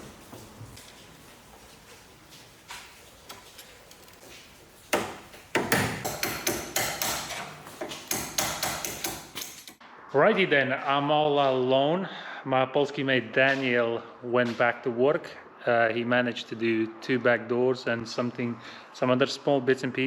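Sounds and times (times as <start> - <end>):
sharp knocks: 4.9 - 9.8.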